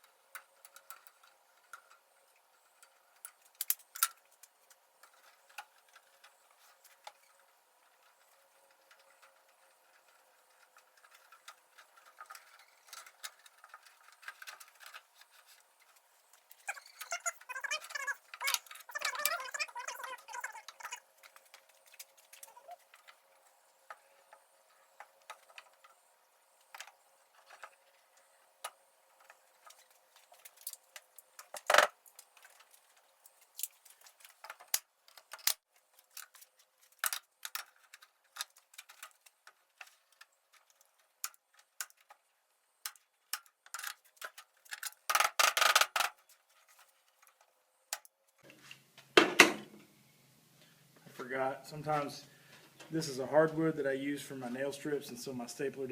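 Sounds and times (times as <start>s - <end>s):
metallic clicks on wire mesh: 2.8s - 6.4s.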